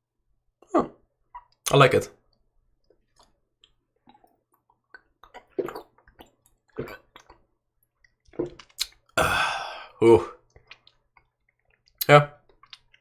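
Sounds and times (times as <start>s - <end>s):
person gulping and swallowing: 3.0s - 13.0s.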